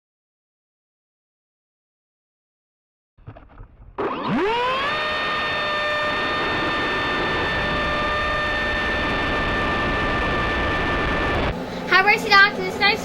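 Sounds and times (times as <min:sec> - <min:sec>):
electric ducted fan whine: 0:04.0 - 0:13.0.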